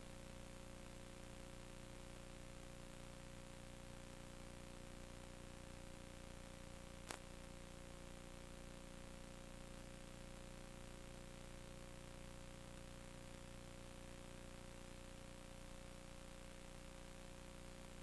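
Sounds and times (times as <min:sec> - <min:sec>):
faint constant hum: 0:00.0 - 0:18.0.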